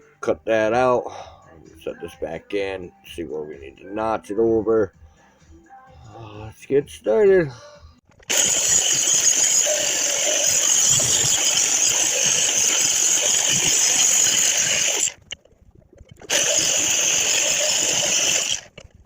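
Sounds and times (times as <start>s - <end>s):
cut-off wheel cutting sheet metal: 8.3s - 15.2s, 16.3s - 18.8s.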